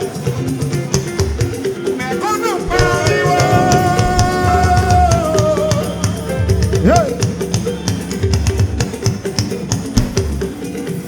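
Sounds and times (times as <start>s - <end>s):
drums and shakers beat: 0.0s - 11.0s
singer holding long note: 2.4s - 9.0s.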